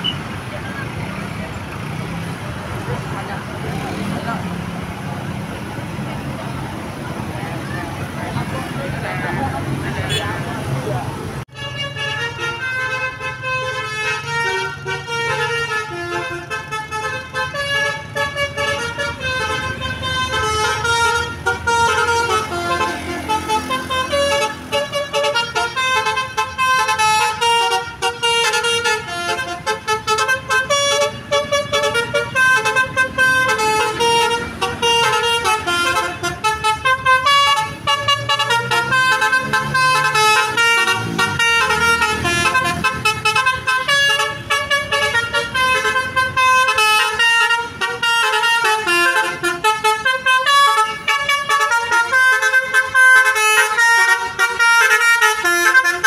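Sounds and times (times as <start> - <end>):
musical bus horn melody: 11.4 - 56.0.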